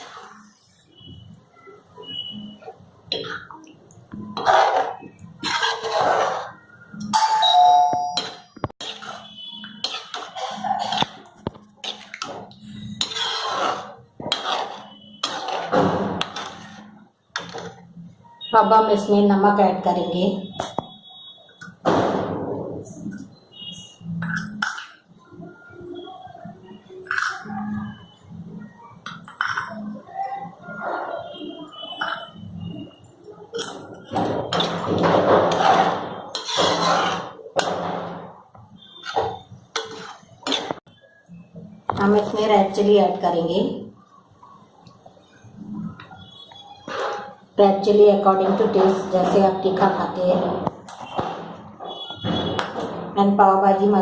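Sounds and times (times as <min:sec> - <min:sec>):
utensil scraping metal pan: 0:04.2 - 0:06.6, 0:08.2 - 0:17.8, 0:33.6 - 0:37.7, 0:38.9 - 0:40.8.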